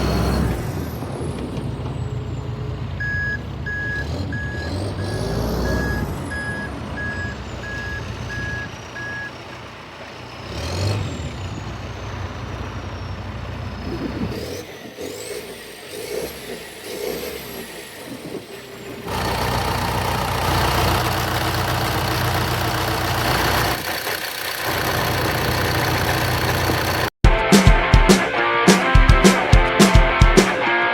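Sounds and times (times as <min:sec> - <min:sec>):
diesel engine running: 0:00.0 - 0:27.2
reversing alarm beeping: 0:02.5 - 0:09.4.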